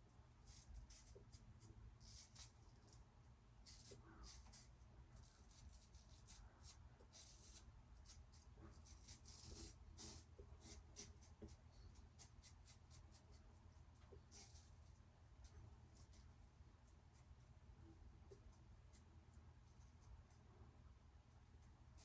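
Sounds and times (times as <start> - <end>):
razor scraping stubble: 3.6 - 13.3.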